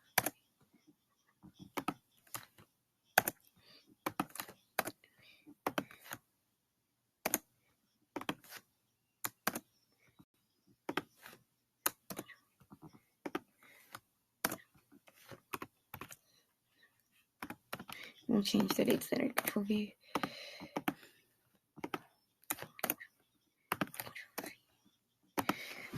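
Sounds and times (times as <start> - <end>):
keyboard and mouse clicks: 0.0 - 0.4, 1.4 - 5.0, 5.6 - 6.2, 7.2 - 7.5, 8.1 - 8.6, 9.2 - 9.8, 10.8 - 16.2, 17.4 - 21.0, 21.8 - 24.6, 25.3 - 25.9.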